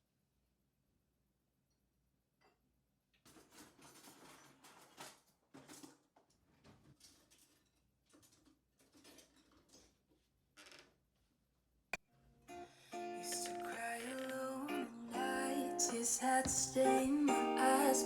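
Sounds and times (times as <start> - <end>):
rustling and handling noises: 3.2 - 11.2
acoustic guitar music: 12.4 - 18.0.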